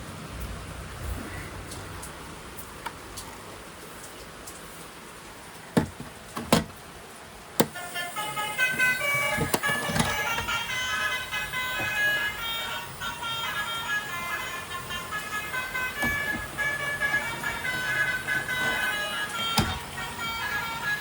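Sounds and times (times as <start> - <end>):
melody of bright tones: 7.7 - 21.0.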